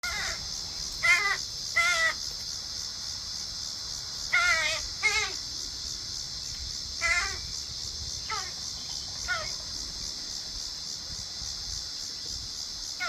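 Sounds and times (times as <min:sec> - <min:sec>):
crows cawing: 0:00.0 - 0:00.4, 0:01.0 - 0:02.2, 0:04.3 - 0:05.4, 0:07.0 - 0:07.4, 0:09.2 - 0:09.5
steady high hiss: 0:00.0 - 0:13.0.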